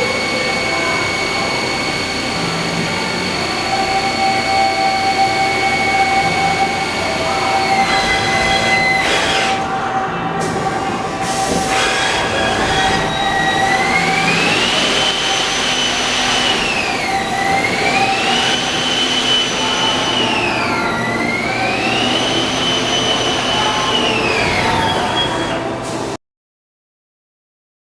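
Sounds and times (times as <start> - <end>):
lathe spindle whine rising and falling: 0.0 - 10.2, 11.6 - 25.8
steady machine hum: 0.0 - 26.2.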